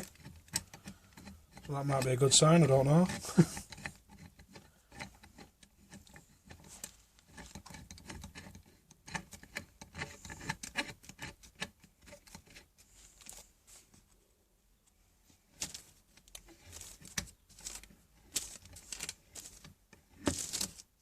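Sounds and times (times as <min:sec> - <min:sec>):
metal vice clicking and knocking: 0:00.0 - 0:12.7.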